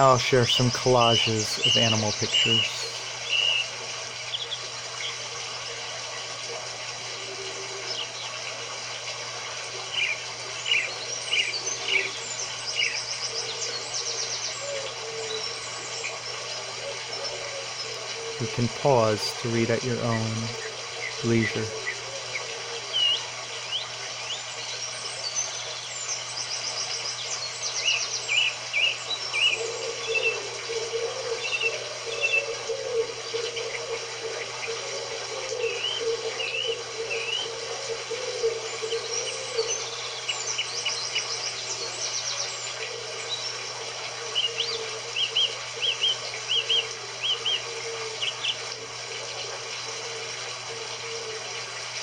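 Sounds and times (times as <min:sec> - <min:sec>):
steady low hum: 0:00.0 - 0:07.1, 0:07.9 - 0:25.3
birds chirping and trilling: 0:00.0 - 0:52.0.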